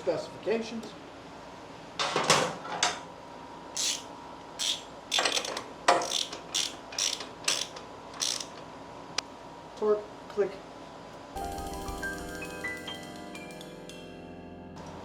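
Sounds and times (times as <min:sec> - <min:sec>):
ratchet wrench ratcheting: 0:03.8 - 0:08.6.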